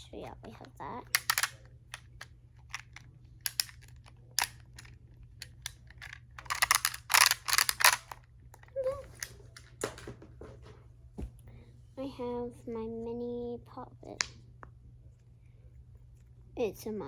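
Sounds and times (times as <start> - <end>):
plastic fidget toys clicking: 0.5 - 9.3.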